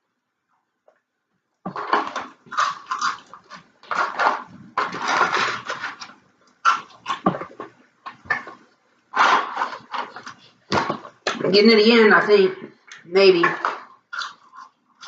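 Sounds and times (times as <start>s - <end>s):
chewing crunchy fries: 1.7s - 11.4s, 13.6s - 15.0s.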